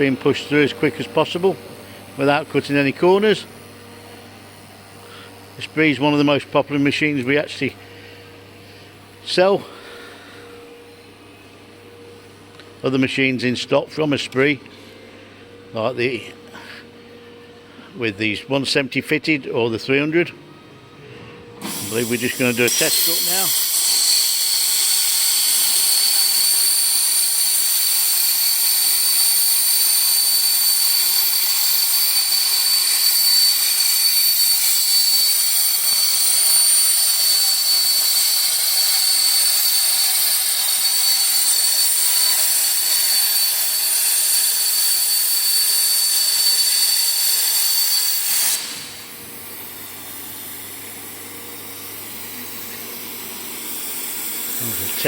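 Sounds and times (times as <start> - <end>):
machine hum: 0.0 - 23.6
plasma torch hissing and whining: 21.6 - 55.0.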